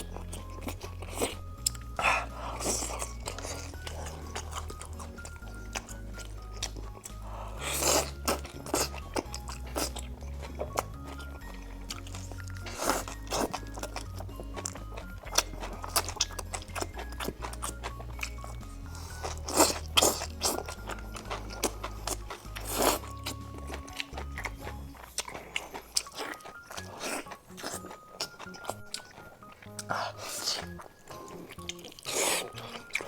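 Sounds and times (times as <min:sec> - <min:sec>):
background music with bass line: 0:00.0 - 0:25.2
crunchy bites and chewing: 0:00.0 - 0:33.0.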